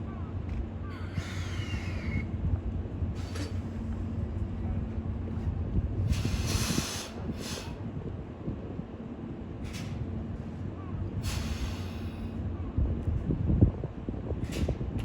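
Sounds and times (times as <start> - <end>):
locomotive low hum: 0.0 - 15.0
steam hissing: 6.1 - 7.8, 11.2 - 12.2.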